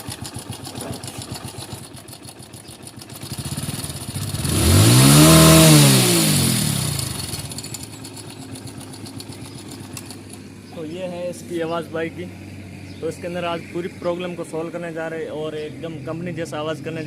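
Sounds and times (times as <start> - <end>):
timing chain rattle: 0.0 - 3.3, 7.3 - 10.4
motorcycle engine idling and revving: 0.0 - 17.0.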